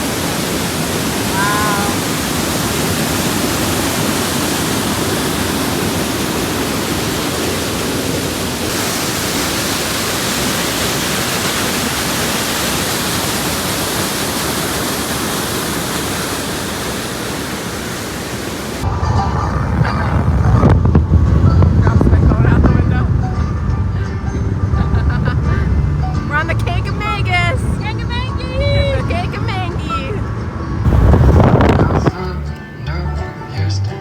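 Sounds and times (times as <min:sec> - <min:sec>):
waterfall roaring: 0:00.0 - 0:21.3, 0:30.8 - 0:32.3
low rumble: 0:18.8 - 0:24.0, 0:30.8 - 0:32.5.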